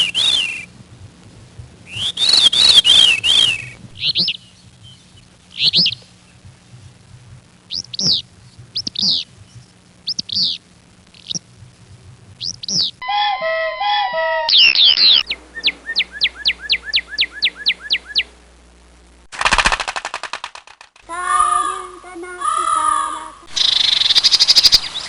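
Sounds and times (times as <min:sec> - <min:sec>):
fast rattling bird call: 0:00.0 - 0:00.6, 0:02.0 - 0:04.4, 0:19.4 - 0:21.0, 0:23.5 - 0:25.0
bird sharp chirps: 0:00.0 - 0:00.7, 0:01.9 - 0:06.0, 0:07.7 - 0:08.2, 0:08.8 - 0:09.3, 0:10.0 - 0:10.6, 0:14.5 - 0:18.3
bird tonal calls: 0:00.0 - 0:00.7, 0:01.9 - 0:06.1, 0:07.7 - 0:10.6, 0:12.4 - 0:18.3
falling whistled bird notes: 0:00.0 - 0:00.7, 0:01.9 - 0:04.4.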